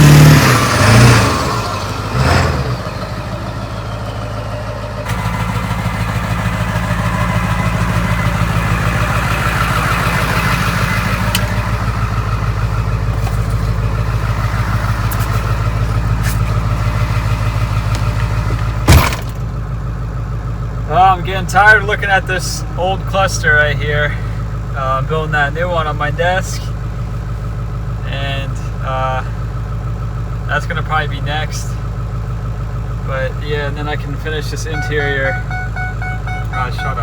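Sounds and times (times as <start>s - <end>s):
diesel engine idling: 0.0s - 37.0s.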